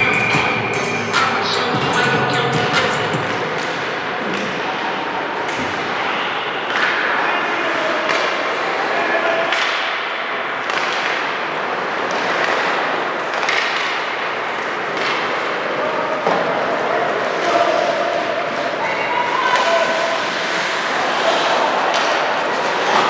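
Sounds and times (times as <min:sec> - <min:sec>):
hockey sticks and puck clacking: 0:02.7 - 0:23.0
players shouting: 0:15.4 - 0:23.0.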